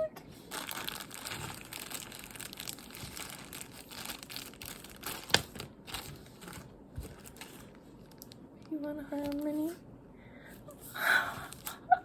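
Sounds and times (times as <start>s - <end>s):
plastic packaging crinkling: 0.4s - 9.7s.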